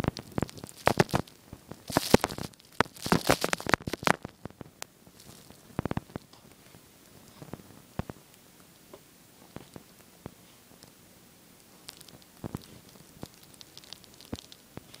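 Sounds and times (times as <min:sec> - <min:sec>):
packed snow crunching: 0:00.0 - 0:04.4, 0:05.2 - 0:06.1.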